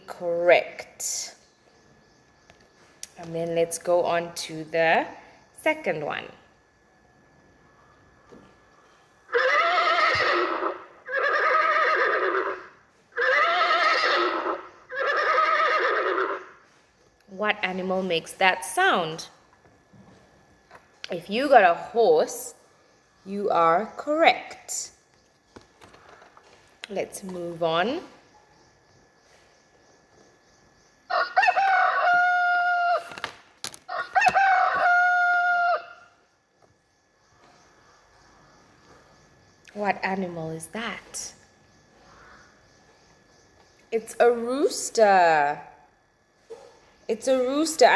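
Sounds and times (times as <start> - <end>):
horse neighing: 9.3 - 16.6
rooster crowing: 31.1 - 33.3, 33.9 - 36.2.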